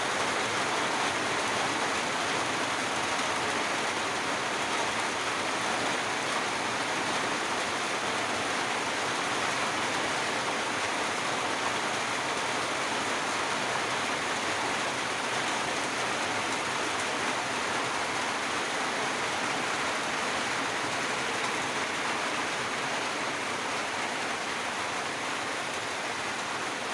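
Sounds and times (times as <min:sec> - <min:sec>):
steady rain hiss: 0:00.0 - 0:26.9.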